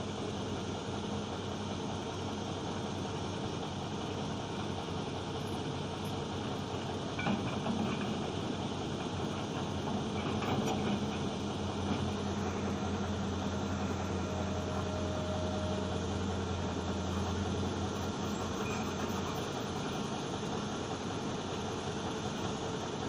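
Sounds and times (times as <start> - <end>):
diesel engine droning: 0.0 - 23.0.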